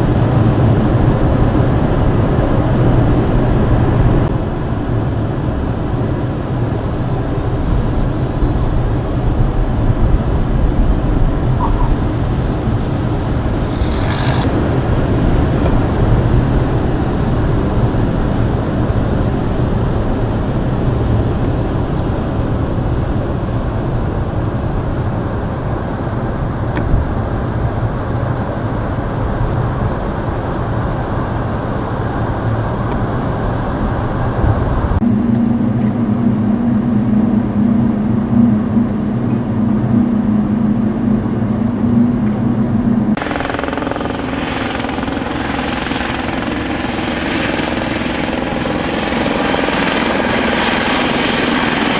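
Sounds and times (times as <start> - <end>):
helicopter engine and rotor noise: 0.0 - 51.9
helicopter in flight: 0.0 - 51.9
strong steady tone: 35.0 - 51.9.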